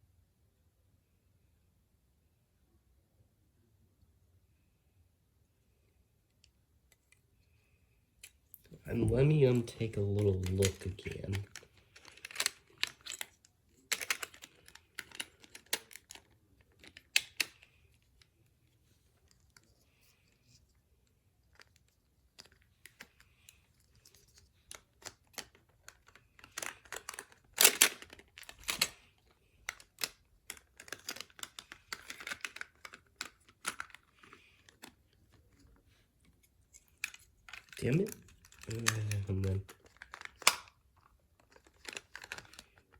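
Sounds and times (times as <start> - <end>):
plastic toy parts clicking: 8.2 - 18.3, 21.5 - 35.6, 36.7 - 42.9
plastic clatter: 8.5 - 18.3, 21.5 - 42.9.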